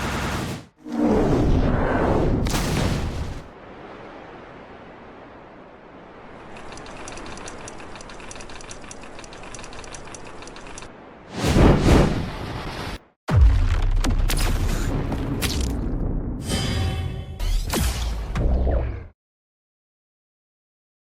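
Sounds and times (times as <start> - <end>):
fast mechanical rattle of ticks: 6.5 - 10.9.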